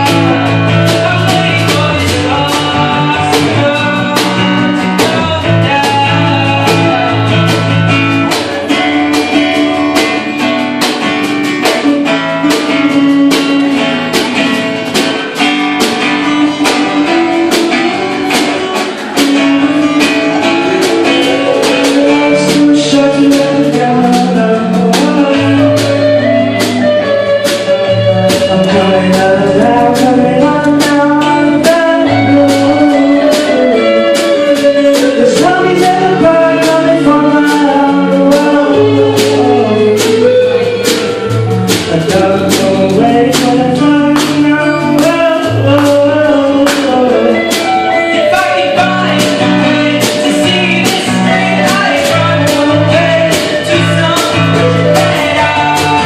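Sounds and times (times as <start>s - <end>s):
bass guitar: 0.0s - 56.0s
guitar: 0.0s - 56.0s
person singing: 0.0s - 56.0s
steady drum beat: 0.0s - 56.0s.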